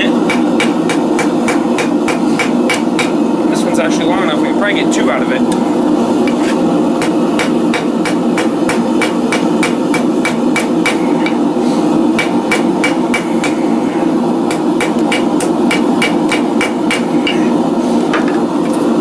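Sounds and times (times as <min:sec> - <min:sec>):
hammer striking steel on anvil: 0:00.2 - 0:03.2, 0:06.3 - 0:11.5, 0:12.2 - 0:13.7, 0:14.5 - 0:18.5.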